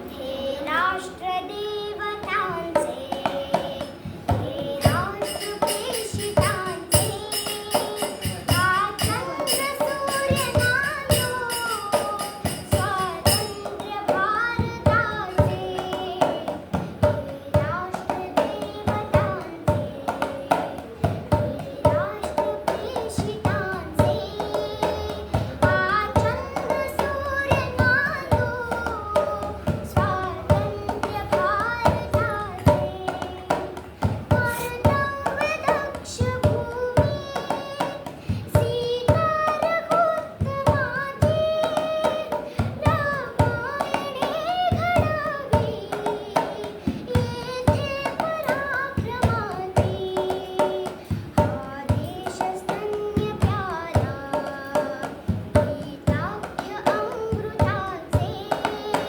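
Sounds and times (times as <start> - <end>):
girl singing: 0.0 - 59.0
fast percussive beat: 2.7 - 59.0.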